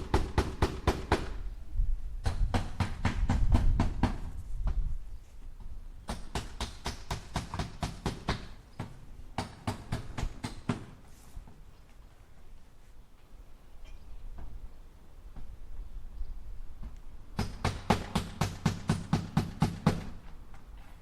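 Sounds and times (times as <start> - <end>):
hammer striking nails into wood: 2.2 - 4.3, 6.1 - 10.9, 17.4 - 20.1.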